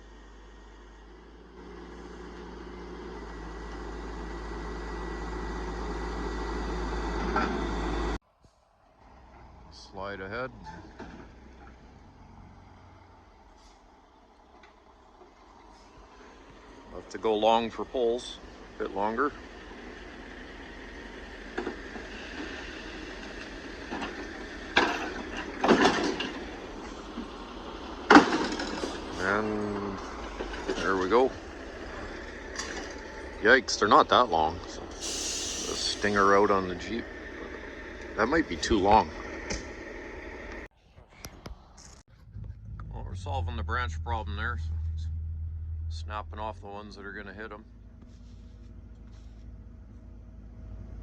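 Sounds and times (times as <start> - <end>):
truck diesel engine running: 0.0 - 40.7, 41.7 - 51.0
metal and wood clunks: 10.6 - 11.8, 23.2 - 27.3, 28.0 - 29.2, 30.0 - 31.2.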